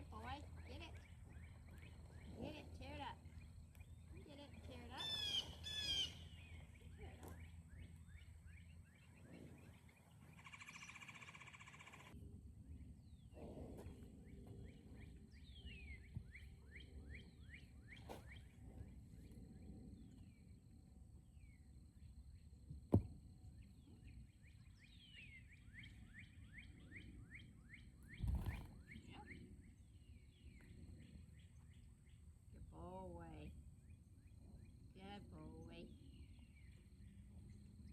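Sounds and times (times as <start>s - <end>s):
low outdoor rumble: 0.0s - 27.4s
songbird chirping: 0.0s - 37.9s.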